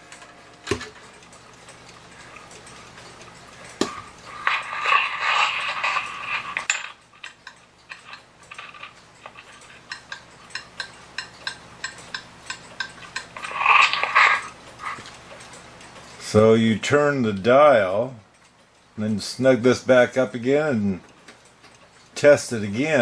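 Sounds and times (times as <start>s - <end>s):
clock ticking: 0.0s - 5.2s, 7.0s - 23.0s
metal clock parts clattering: 0.7s - 15.6s.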